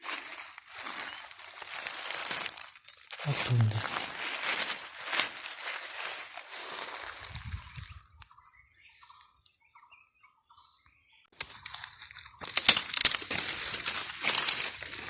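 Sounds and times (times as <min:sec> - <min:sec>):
dry leaves crunching: 0:00.0 - 0:08.1, 0:11.4 - 0:15.0.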